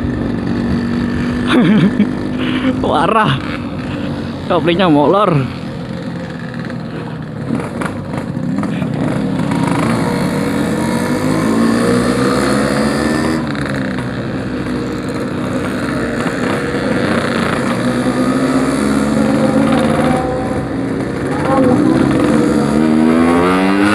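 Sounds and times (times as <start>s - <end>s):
motorcycle two-stroke engine: 0.0s - 23.9s
person speaking: 18.1s - 22.8s.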